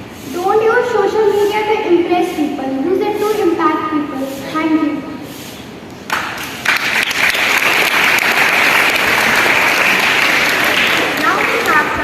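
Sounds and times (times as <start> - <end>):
children clapping: 6.1 - 12.0.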